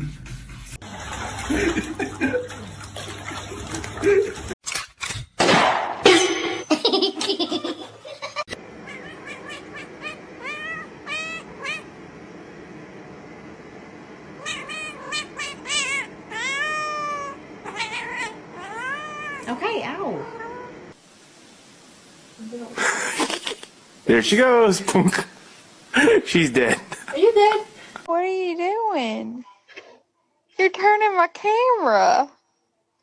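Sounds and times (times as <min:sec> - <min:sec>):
cat meowing: 0:08.8 - 0:11.9, 0:14.4 - 0:20.8.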